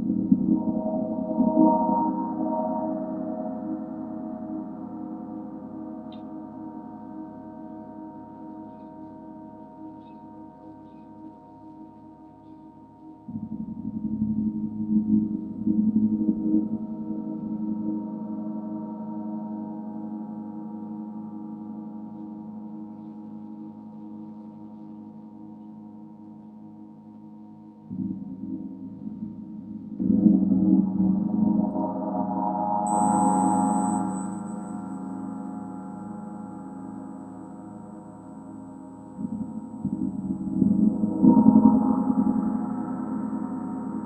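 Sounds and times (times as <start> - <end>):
gong ringing: 32.9 - 35.3.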